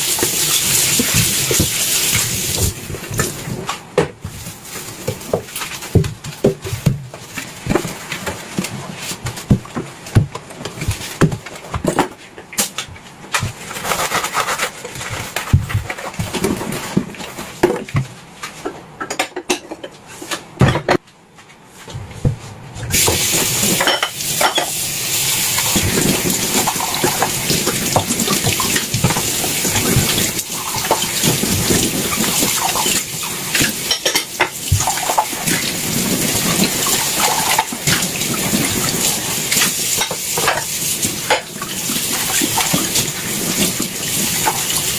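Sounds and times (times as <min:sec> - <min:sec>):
dishes clattering in a sink: 0:19.0 - 0:20.0, 0:23.0 - 0:24.8, 0:25.5 - 0:44.9.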